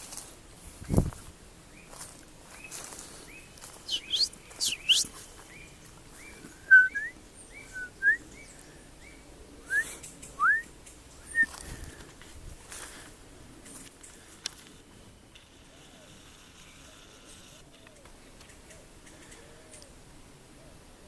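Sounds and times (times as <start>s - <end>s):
upward sweeping bird whistles: 3.9s - 5.1s, 6.7s - 8.2s.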